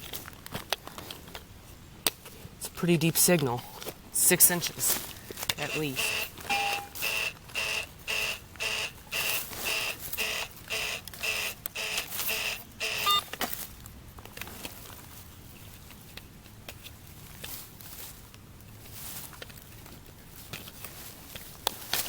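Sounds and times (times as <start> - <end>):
metal detector beeping: 5.5 - 13.3
metal detector chirp: 5.5 - 13.3.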